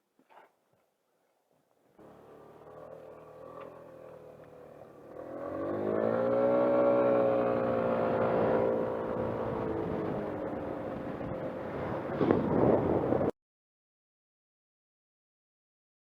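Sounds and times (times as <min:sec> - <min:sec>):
motorcycle engine revving: 0:02.0 - 0:13.0.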